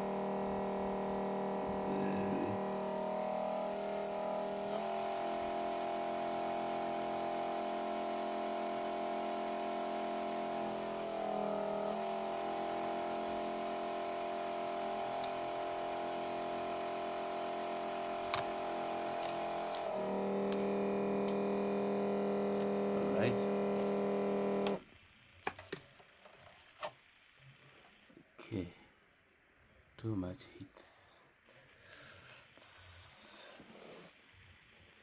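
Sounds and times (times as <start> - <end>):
electric hum: 0.0 - 24.8.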